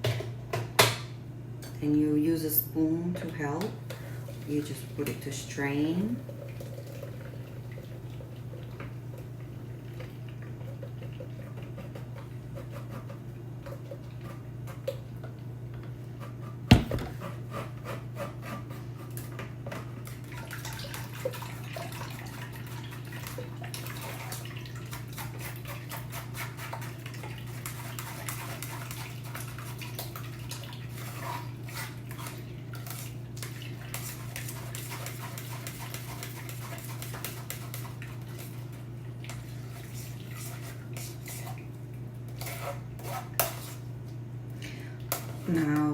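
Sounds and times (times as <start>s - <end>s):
spoon scraping in a strainer: 42.3s - 43.8s.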